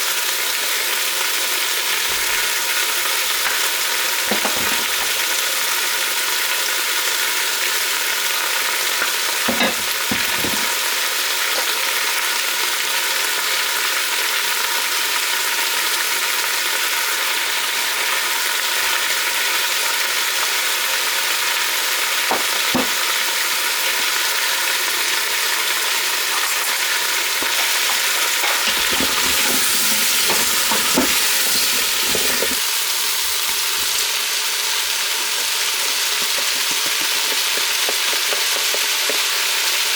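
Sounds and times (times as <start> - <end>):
food sizzling in a pan: 0.0 - 39.9
utensil knocking against pan: 4.3 - 5.3, 9.5 - 10.8, 22.3 - 23.0, 27.4 - 32.6, 36.2 - 39.3
stirring clatter: 27.4 - 32.6.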